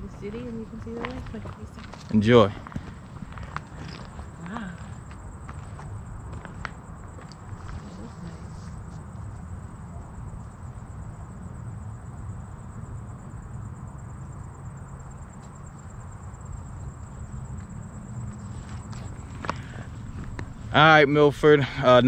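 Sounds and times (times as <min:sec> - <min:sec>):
insects trilling: 0:00.0 - 0:22.0.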